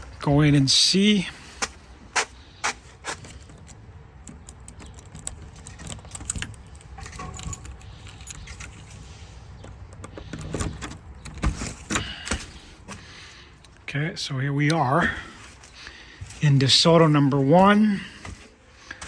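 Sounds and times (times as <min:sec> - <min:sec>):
keys jangling: 0:03.1 - 0:12.3.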